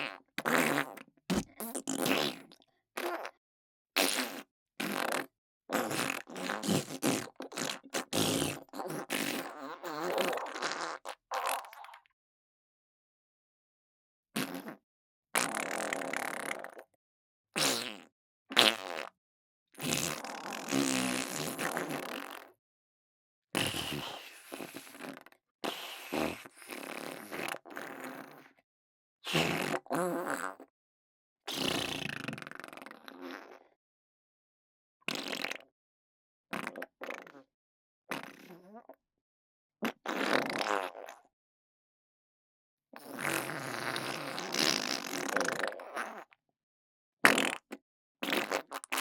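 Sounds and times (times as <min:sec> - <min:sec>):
fart sound effects: 0:00.0 - 0:03.4, 0:04.0 - 0:11.7, 0:14.4 - 0:14.8, 0:15.4 - 0:16.8, 0:19.8 - 0:22.5, 0:29.3 - 0:30.6, 0:39.8 - 0:41.2, 0:43.0 - 0:46.3, 0:47.2 - 0:49.0.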